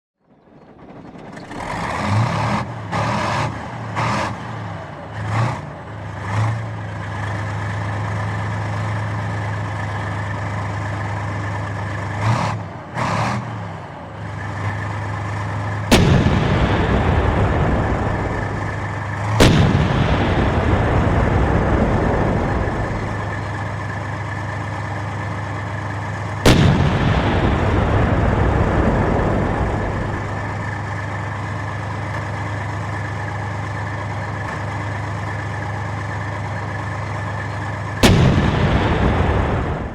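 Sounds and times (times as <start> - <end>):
heavy tank engine revving: 0.2 - 39.9
cannon shots rumbling: 15.7 - 24.4, 26.3 - 32.3, 38.0 - 39.9.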